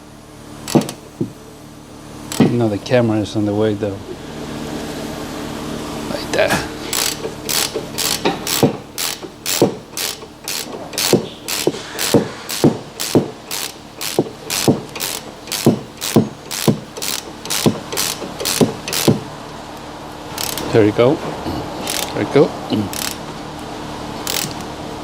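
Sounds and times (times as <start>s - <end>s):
ratchet wrench clicking: 0.7s - 1.0s, 2.3s - 2.5s, 6.9s - 19.2s, 20.3s - 20.7s, 21.8s - 22.2s, 22.9s - 23.2s, 24.2s - 24.7s.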